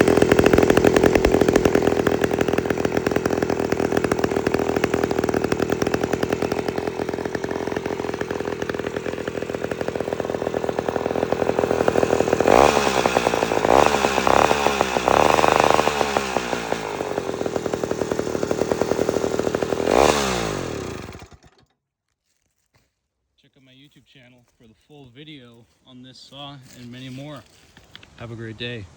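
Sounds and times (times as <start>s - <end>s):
small saw engine revving: 0.0s - 21.7s.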